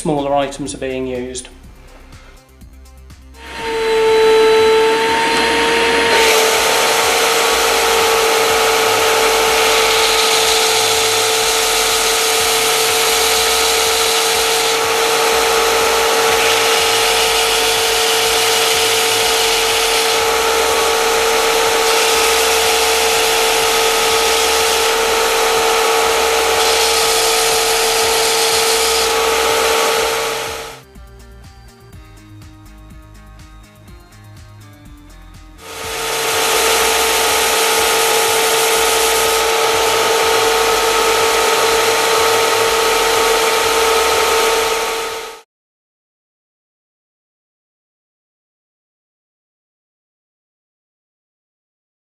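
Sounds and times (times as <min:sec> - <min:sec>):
sander motor whine: 0:03.3 - 0:30.8, 0:35.6 - 0:45.4
sanding rasp: 0:03.4 - 0:30.8, 0:35.6 - 0:45.4.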